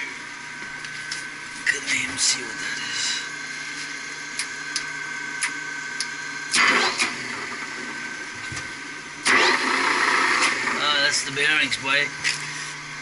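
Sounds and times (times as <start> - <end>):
pump motor whine and hum: 0.0 - 13.0
burst of noise: 9.2 - 10.8.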